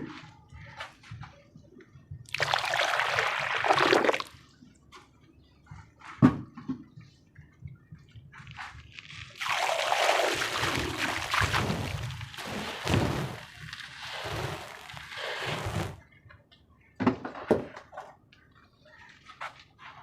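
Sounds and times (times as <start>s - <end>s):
wet cement crumbling: 2.3s - 4.3s, 9.0s - 16.0s
watery slosh: 2.3s - 4.4s, 9.4s - 16.0s
faint crackles: 8.5s - 16.0s.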